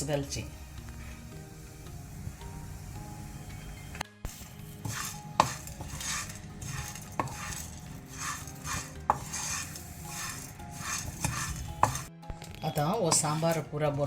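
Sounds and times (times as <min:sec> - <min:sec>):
seeds scraping in a pan: 0:04.3 - 0:12.1.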